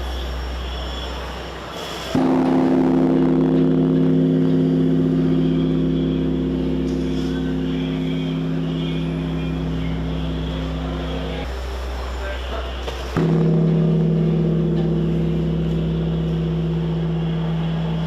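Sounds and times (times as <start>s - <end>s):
large bronze bell humming: 2.2s - 11.5s, 13.1s - 18.0s.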